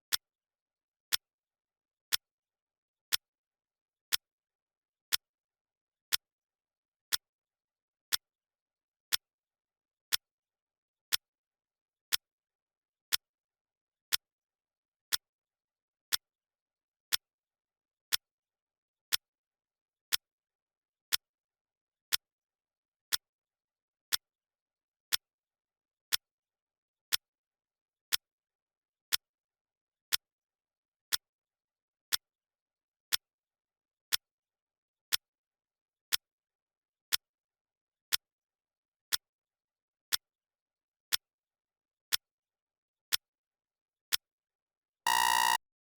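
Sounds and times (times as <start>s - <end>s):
clock ticking: 45.1s - 45.6s.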